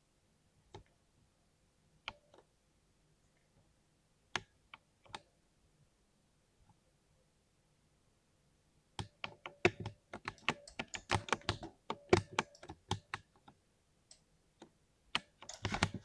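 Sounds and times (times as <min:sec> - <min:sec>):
typing on mechanical keyboard: 0:09.0 - 0:13.3, 0:15.2 - 0:16.0.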